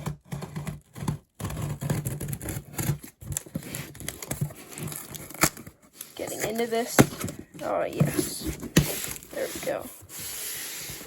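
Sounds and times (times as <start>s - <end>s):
scissors slitting packing tape: 0.5s - 6.6s.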